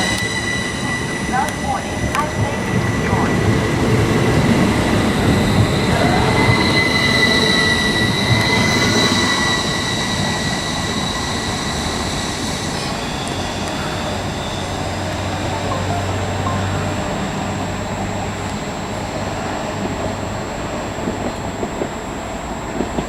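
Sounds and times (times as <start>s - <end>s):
high-pitched wheel squeal: 0.0s - 2.0s, 5.2s - 17.5s
train wheels rumbling on rail: 0.0s - 23.0s.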